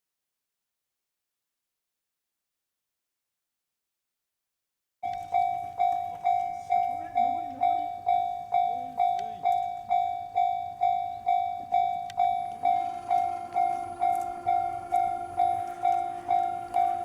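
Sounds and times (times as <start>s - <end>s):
level crossing warning bell: 5.0s - 17.0s
steady lower tone: 10.0s - 17.0s.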